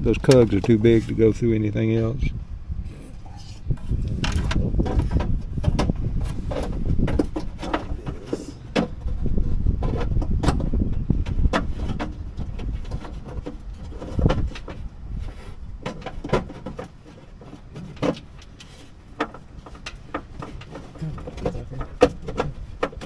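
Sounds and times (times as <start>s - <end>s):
steady low rumble: 0.0s - 15.8s.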